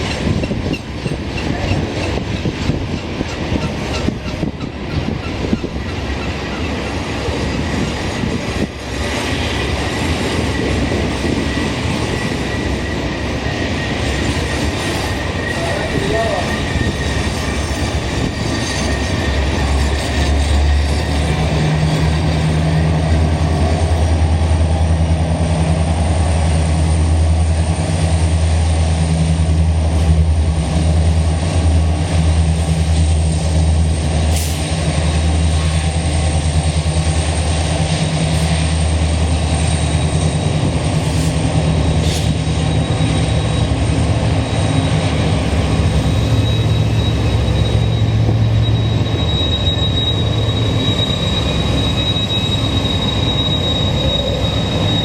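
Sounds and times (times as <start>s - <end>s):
diesel locomotive drone: 0.0s - 55.0s
train cars on rails: 0.0s - 55.0s.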